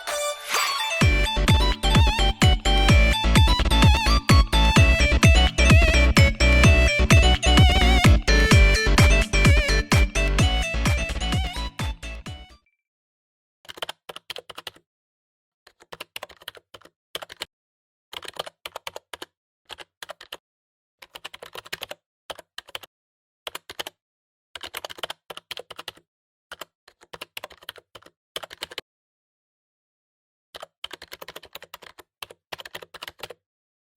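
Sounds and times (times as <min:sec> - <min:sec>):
keyboard typing clicks: 0:01.0 - 0:12.4, 0:13.7 - 0:14.8, 0:15.7 - 0:17.5, 0:18.1 - 0:20.4, 0:21.0 - 0:22.9, 0:24.6 - 0:28.8, 0:30.6 - 0:33.4.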